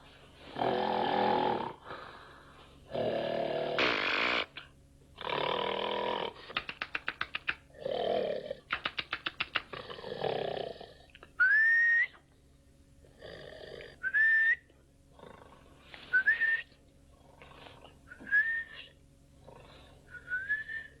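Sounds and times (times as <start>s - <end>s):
snoring with high whistle: 2.9s - 4.5s, 14.0s - 14.6s, 15.9s - 16.7s, 18.1s - 18.9s, 20.1s - 21.0s.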